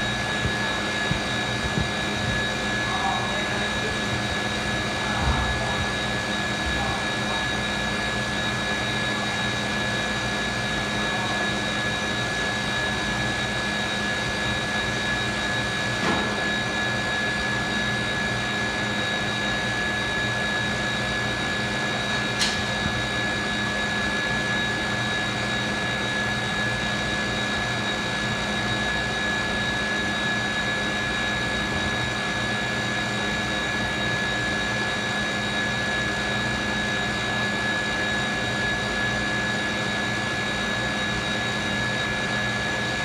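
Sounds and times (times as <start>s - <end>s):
kitchen machinery whirring: 0.0s - 17.5s.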